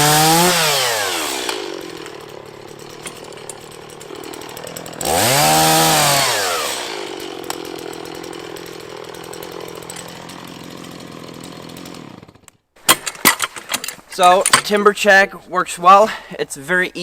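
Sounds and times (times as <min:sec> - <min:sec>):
chainsaw idling and revving: 0:00.0 - 0:12.6.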